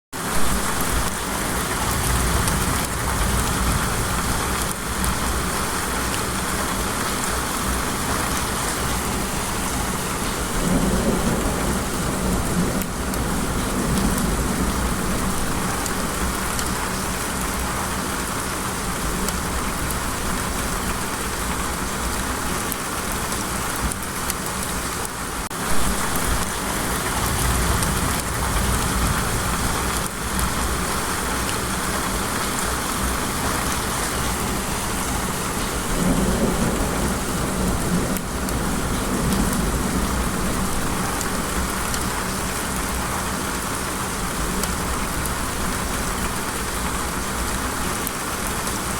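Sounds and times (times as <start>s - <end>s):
steady rain: 0.2s - 48.9s
low rumble: 25.9s - 30.5s.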